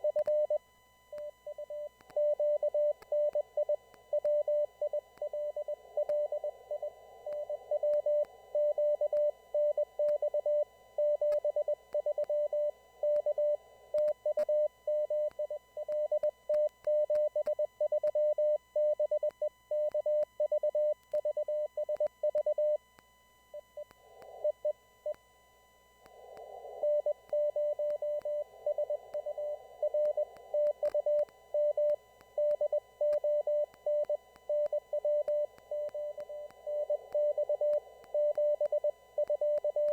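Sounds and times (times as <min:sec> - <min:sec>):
morse code tone: 0:26.8 - 0:39.9.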